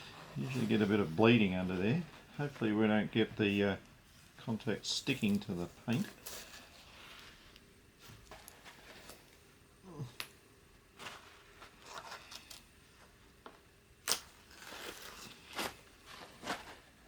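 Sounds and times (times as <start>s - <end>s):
masking tape peeling off plastic: 14.0s - 15.9s.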